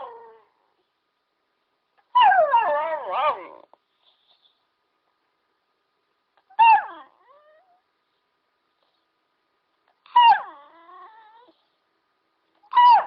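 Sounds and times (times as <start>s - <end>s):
puppy howling and whining: 0.0s - 0.7s, 2.1s - 3.7s, 6.5s - 7.8s, 10.0s - 11.6s, 12.7s - 13.0s.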